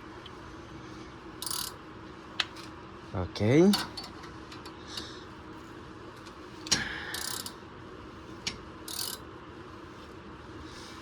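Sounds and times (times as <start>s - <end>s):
ratchet wrench clicking: 1.4s - 1.8s, 7.1s - 7.6s, 8.9s - 9.2s.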